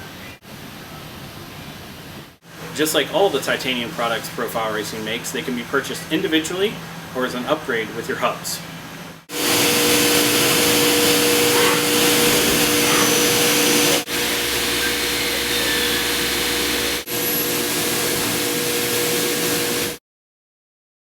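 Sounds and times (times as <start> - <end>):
shop machinery running: 2.4 - 20.0.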